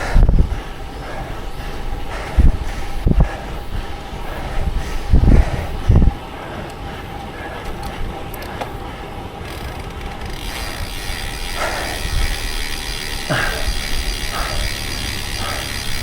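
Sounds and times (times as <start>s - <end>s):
bicycle freehub ratchet clicking: 9.4s - 16.0s.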